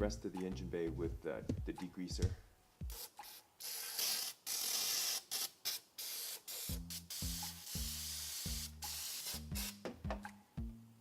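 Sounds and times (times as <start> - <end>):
instrumental music with low notes: 0.0 - 3.0, 6.7 - 11.0
spray can hissing bursts: 2.9 - 9.8.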